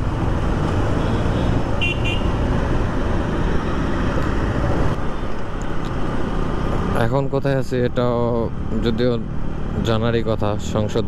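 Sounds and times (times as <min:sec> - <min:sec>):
rushing wind: 0:00.0 - 0:07.0.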